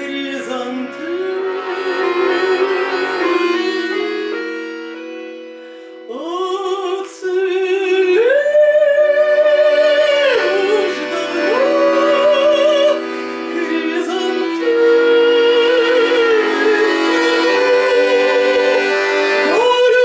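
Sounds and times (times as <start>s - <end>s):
person singing with vibrato: 0.0s - 20.0s
sustained accompaniment chords: 0.0s - 20.0s.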